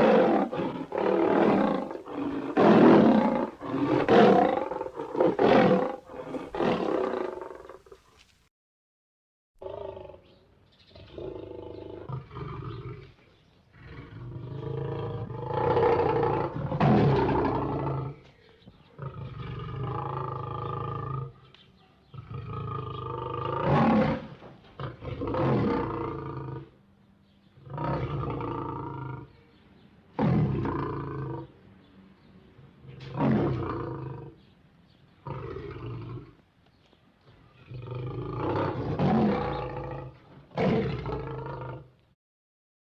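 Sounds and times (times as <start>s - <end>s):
lion roaring and growling: 0.0s - 8.0s, 11.0s - 18.2s, 18.9s - 21.4s, 22.1s - 26.8s, 27.6s - 29.4s, 30.1s - 31.6s, 32.8s - 34.5s, 37.6s - 42.0s.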